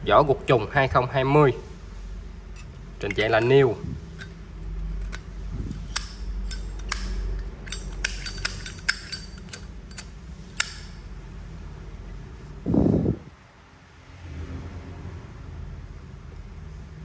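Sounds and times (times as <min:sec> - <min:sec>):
low hum: 0:02.2 - 0:11.2
metal lighter clicking: 0:04.2 - 0:11.0.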